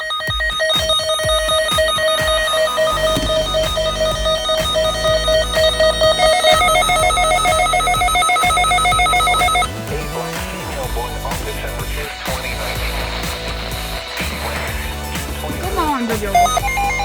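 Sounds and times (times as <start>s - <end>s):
emergency alert tone beeping: 0.0s - 9.8s, 15.6s - 17.0s.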